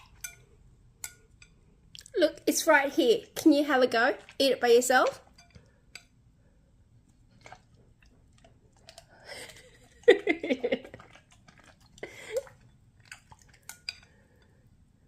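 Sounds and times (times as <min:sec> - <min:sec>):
dog chewing food: 0:07.3 - 0:13.8.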